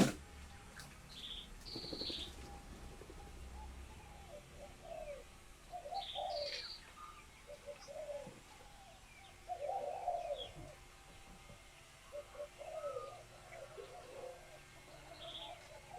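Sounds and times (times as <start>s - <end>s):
dove cooing: 0.0s - 0.2s, 1.7s - 6.8s, 7.4s - 10.8s, 12.1s - 15.9s.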